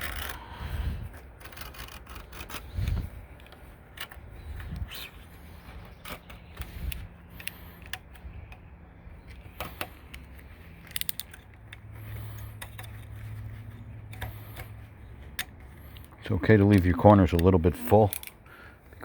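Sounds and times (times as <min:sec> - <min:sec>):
light clicks and taps on metal: 0:05.8 - 0:18.4.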